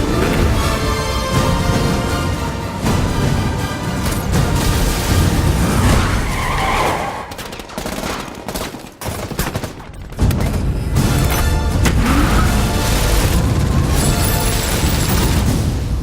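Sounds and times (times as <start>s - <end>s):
car tyres skidding: 5.6s - 7.3s
gunfire: 7.0s - 16.0s.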